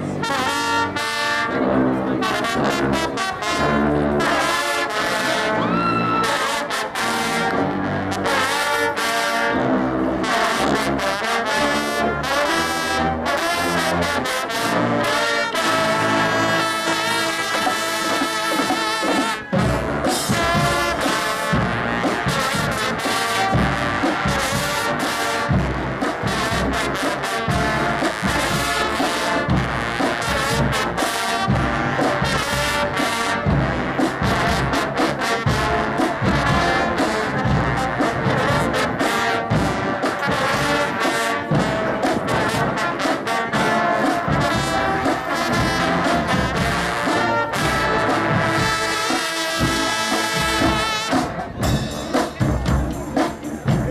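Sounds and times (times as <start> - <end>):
low brass ensemble playing: 0.0 - 53.9.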